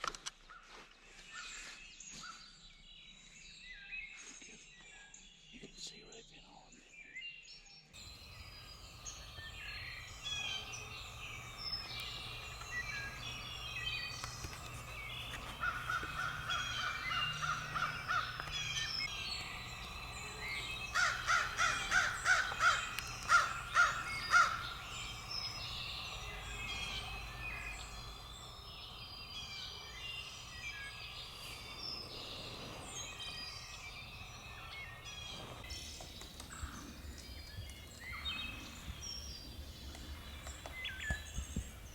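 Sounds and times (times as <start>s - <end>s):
songbirds chirping: 1.4s - 41.9s
crow cawing: 8.1s - 29.0s.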